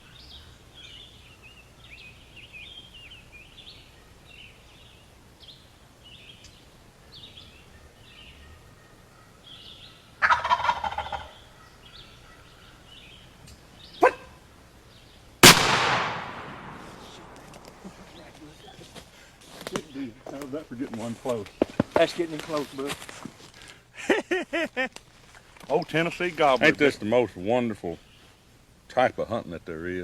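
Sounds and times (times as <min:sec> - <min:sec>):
songbirds chirping: 0:00.0 - 0:30.0
turkey gobbling: 0:10.2 - 0:12.9, 0:14.0 - 0:14.4
gunshot with echo: 0:15.4 - 0:17.7.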